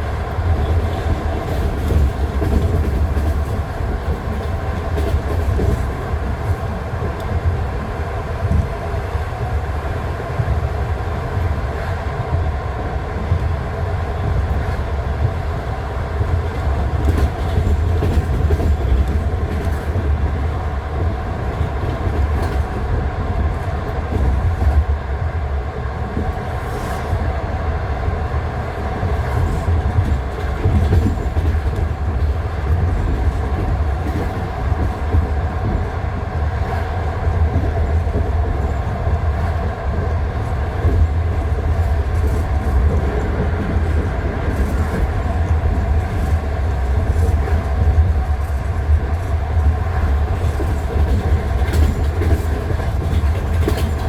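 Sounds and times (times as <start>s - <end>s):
train wheels knocking on rail joints: 0.0s - 7.6s, 16.2s - 25.0s, 28.8s - 54.0s
low train rumble: 0.0s - 54.0s.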